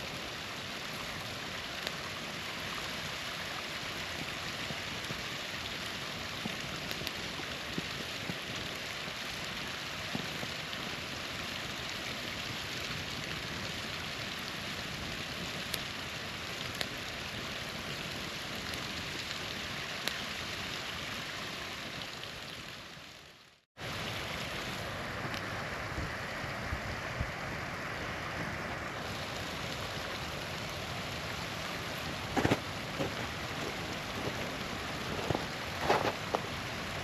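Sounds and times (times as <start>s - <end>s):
small waterfall rushing: 0.0s - 37.0s
campfire pops: 3.9s - 9.4s, 29.0s - 37.0s.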